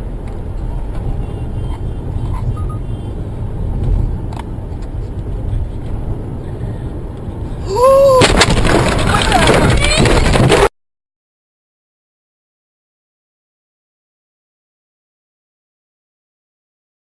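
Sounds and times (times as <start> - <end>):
low vehicle rumble: 0.0 - 10.7
vehicle collision crash: 8.0 - 10.7.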